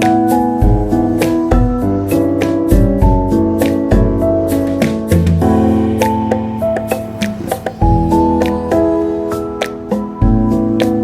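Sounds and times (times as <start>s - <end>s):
keyboard melody with chords: 0.0s - 11.0s.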